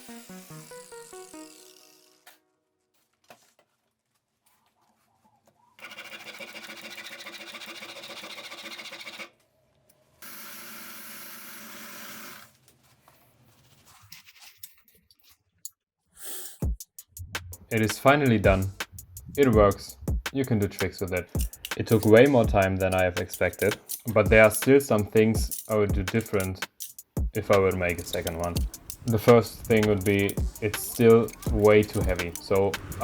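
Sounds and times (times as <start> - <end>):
small power tool motor: 0.0 - 2.4, 5.8 - 9.4, 10.2 - 12.5.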